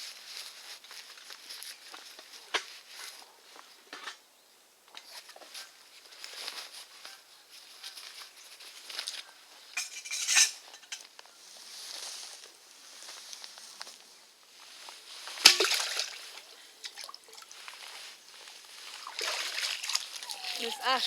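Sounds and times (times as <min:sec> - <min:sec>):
metal cookware clinking: 0:09.8 - 0:11.0.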